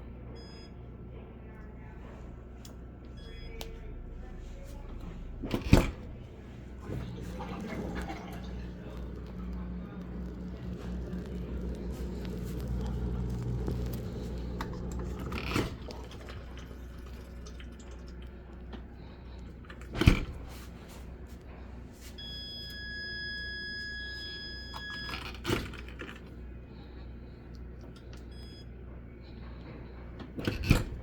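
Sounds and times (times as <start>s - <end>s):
dishwasher low hum: 0.0s - 31.0s
dishwasher water sloshing: 6.7s - 10.5s, 11.9s - 19.2s.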